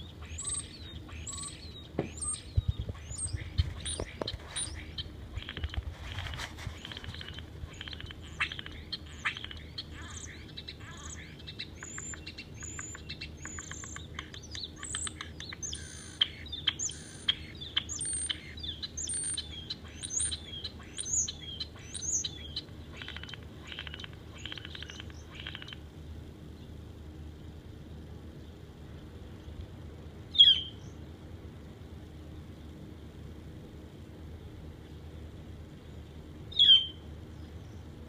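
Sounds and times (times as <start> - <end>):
starling singing: 0.0 - 25.8, 36.6 - 37.0.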